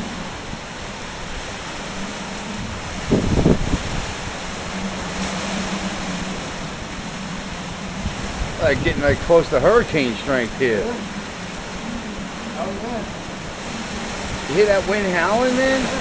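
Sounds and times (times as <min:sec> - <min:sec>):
wind howling and buffeting microphone: 0:00.0 - 0:16.0.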